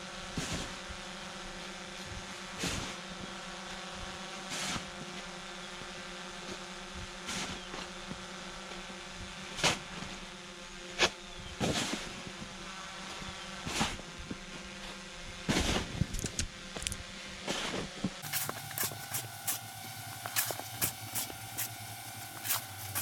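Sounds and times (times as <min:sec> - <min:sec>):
engine running with whine: 0:12.0 - 0:23.0.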